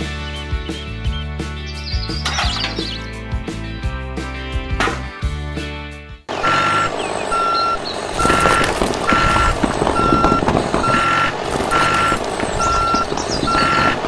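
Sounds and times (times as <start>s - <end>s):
vehicle reversing alarm beeping: 6.3s - 14.0s.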